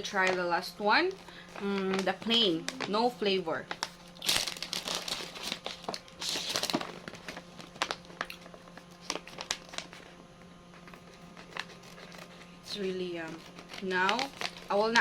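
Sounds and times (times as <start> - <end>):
plastic snack bag crinkling: 1.3 - 10.2, 13.3 - 15.0.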